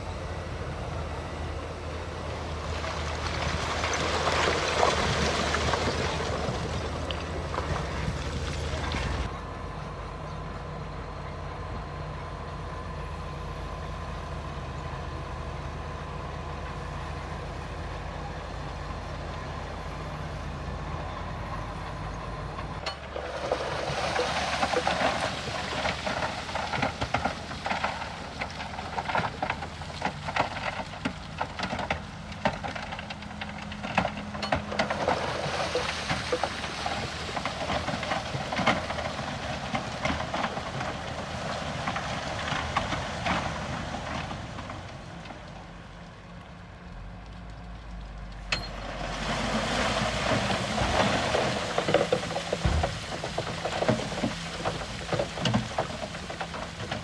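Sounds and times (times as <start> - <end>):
heavy diesel machinery running: 0.0 - 57.0
stone and gravel rattling: 2.7 - 9.3, 22.8 - 44.8, 48.6 - 57.0.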